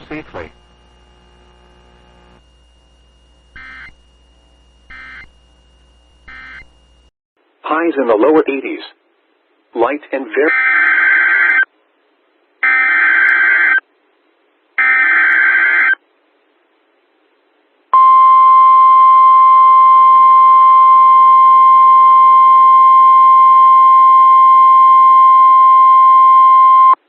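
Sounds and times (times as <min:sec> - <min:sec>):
steady alarm tone: 0:00.6 - 0:07.1.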